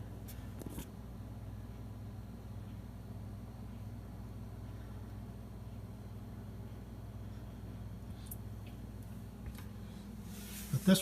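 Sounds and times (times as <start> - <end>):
faint hiss: 10.2 - 11.0.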